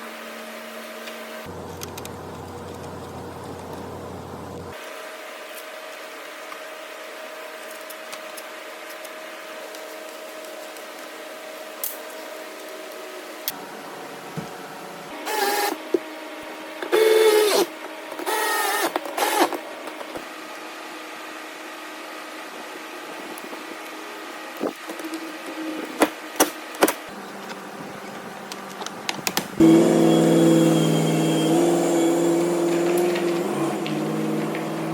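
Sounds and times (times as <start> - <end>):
vehicle engine starting and running: 1.5 - 4.8, 29.6 - 34.9.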